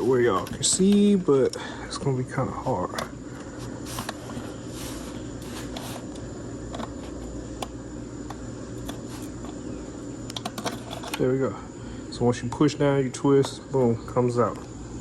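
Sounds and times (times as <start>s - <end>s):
steady low hum: 0.0s - 15.0s
plastic clicks and scrapes: 10.3s - 11.2s.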